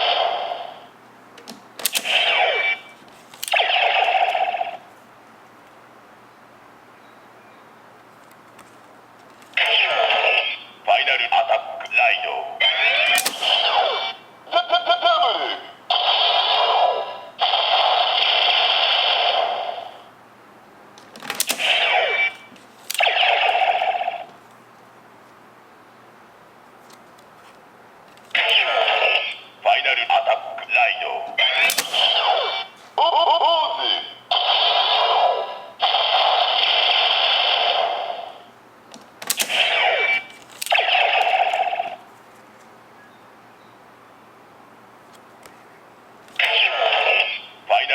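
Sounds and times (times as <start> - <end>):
sharp click: 1.4 - 2.3, 13.1 - 13.6, 31.7 - 32.2
sharp clicks: 1.4 - 2.4, 3.4 - 3.8, 13.0 - 13.7, 22.9 - 23.6, 31.6 - 32.2, 38.9 - 41.6
toy belt electronic sound effects: 1.9 - 4.8, 28.4 - 38.4, 39.4 - 42.0.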